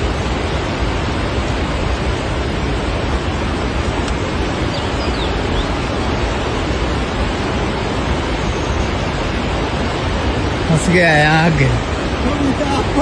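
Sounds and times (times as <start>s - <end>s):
floodwater rushing: 0.0s - 13.0s.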